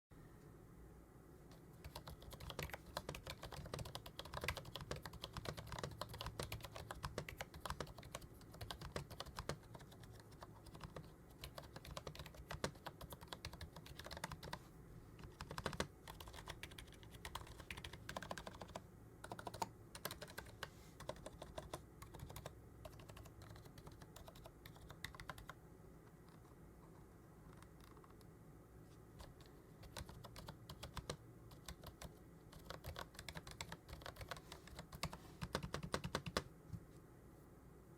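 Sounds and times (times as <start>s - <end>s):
quiet keyboard typing: 1.5s - 28.4s, 29.2s - 36.8s.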